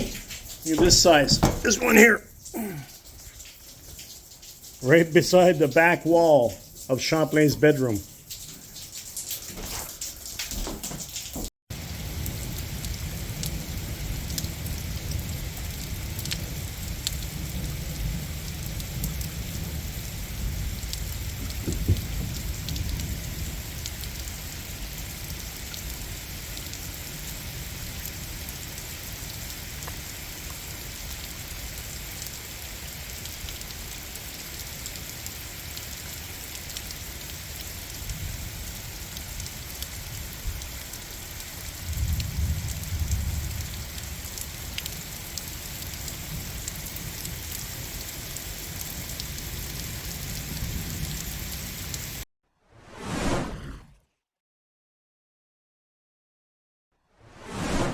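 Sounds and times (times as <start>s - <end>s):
heavy rain pouring: 0.0s - 52.2s
thunder rumbling: 11.7s - 23.8s, 41.7s - 44.8s.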